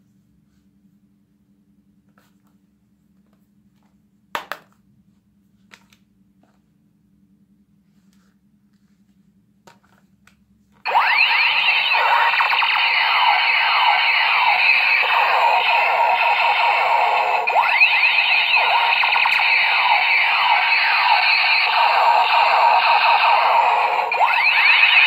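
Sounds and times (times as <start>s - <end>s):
toy gun electronic sweeping tones: 10.9s - 25.0s.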